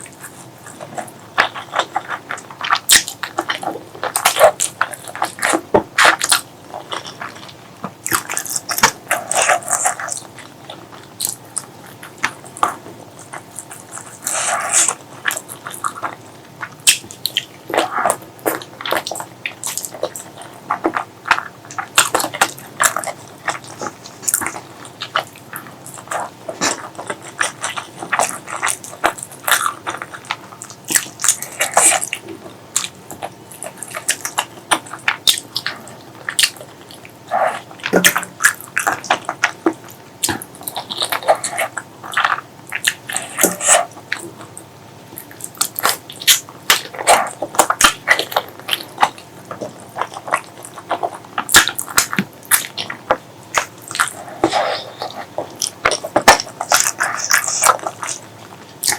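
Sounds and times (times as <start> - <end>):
wet chewing and lip-smacking: 0.0 - 58.9.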